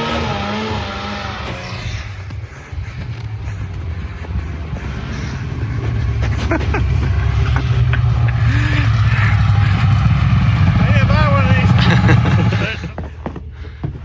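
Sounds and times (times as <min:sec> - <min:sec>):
vehicle engine rumbling: 0:00.0 - 0:14.0.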